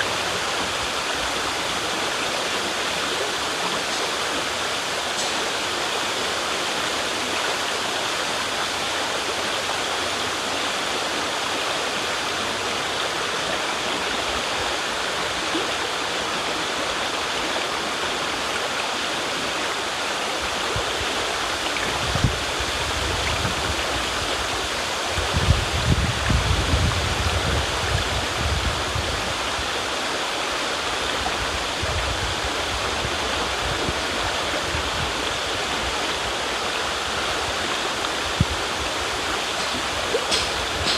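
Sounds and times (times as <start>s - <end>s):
river water rushing: 0.0s - 40.9s.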